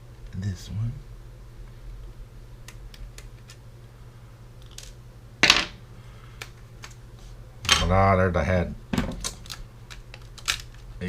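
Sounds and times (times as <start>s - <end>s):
plastic parts clicking and tapping: 9.0s - 10.8s.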